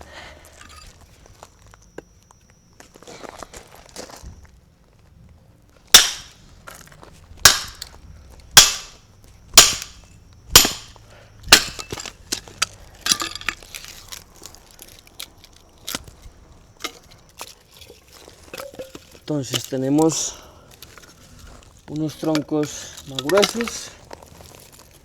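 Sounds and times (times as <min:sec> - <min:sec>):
hatchet splitting firewood: 0:00.1 - 0:00.9, 0:05.9 - 0:25.0
wood clicking and cracking: 0:11.5 - 0:25.0.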